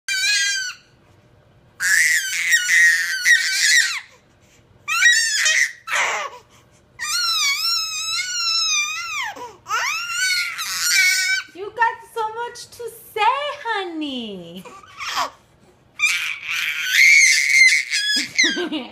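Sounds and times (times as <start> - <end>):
baby squealing: 0.1 - 0.9, 1.8 - 4.1, 4.9 - 6.4, 7.0 - 11.5, 14.7 - 15.4, 16.0 - 18.6.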